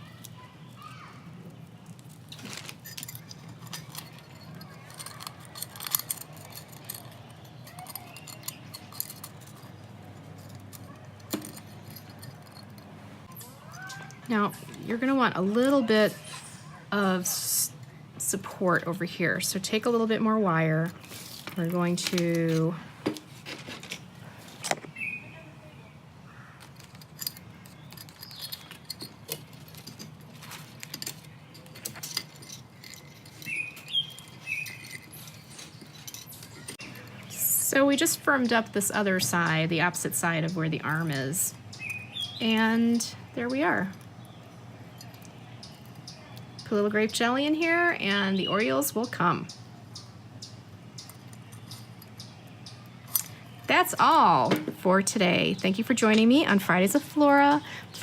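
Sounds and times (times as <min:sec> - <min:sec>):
wire and beads clinking on glass: 0:00.0 - 0:22.8, 0:26.6 - 0:49.4.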